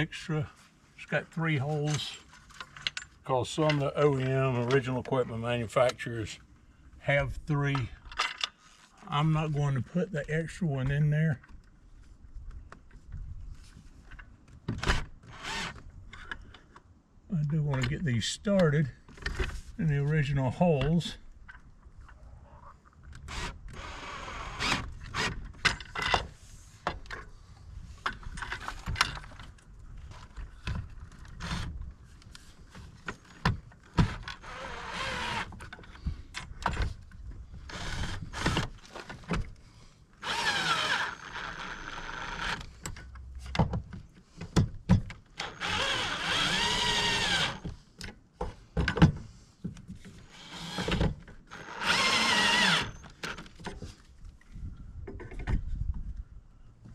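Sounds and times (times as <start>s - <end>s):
power drill driving screws: 15.3s - 15.8s, 23.3s - 25.3s, 34.0s - 35.6s, 37.7s - 38.7s, 40.2s - 42.7s, 45.4s - 47.6s, 50.2s - 53.4s.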